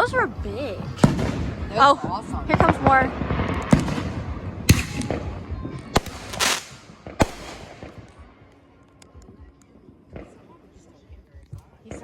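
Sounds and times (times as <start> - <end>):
firework crackling: 0.0 - 8.4
firework bangs: 0.8 - 8.3.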